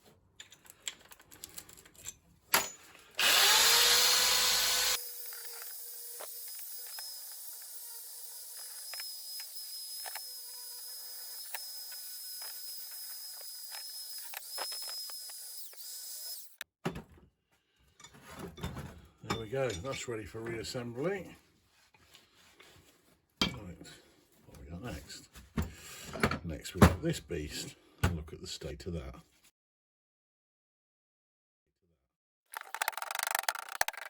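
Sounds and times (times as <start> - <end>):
handling clicks: 32.6 - 34.0
rotary wire brush whining: 32.6 - 34.0.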